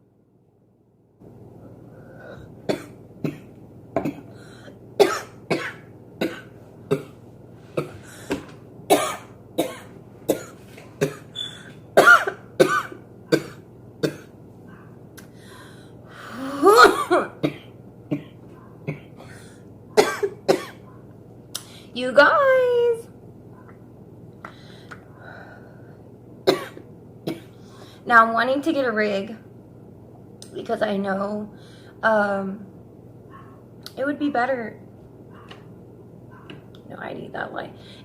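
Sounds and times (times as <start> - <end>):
girl coughing: 2.7 - 4.3, 5.0 - 7.2, 8.9 - 11.3, 12.0 - 14.3, 16.6 - 19.4, 20.0 - 20.8, 26.5 - 27.6.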